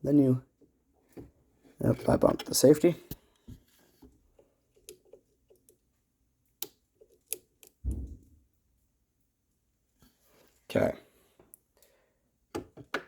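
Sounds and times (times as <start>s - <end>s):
soft low thump: 7.8s - 8.4s.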